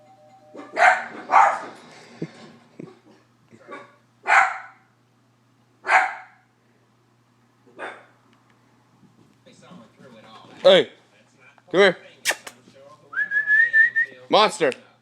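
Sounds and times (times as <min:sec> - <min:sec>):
doorbell chime on tv: 0:00.0 - 0:00.9
dog yipping: 0:00.6 - 0:01.7, 0:03.8 - 0:04.8
dogs barking: 0:00.6 - 0:01.8, 0:03.6 - 0:04.9, 0:05.8 - 0:06.5, 0:07.7 - 0:08.2.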